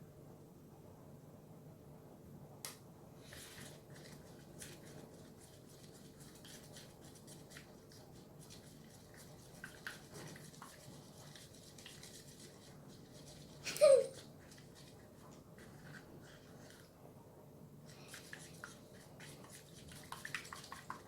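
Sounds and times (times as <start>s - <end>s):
utensil scraping a bowl: 8.3s - 16.9s.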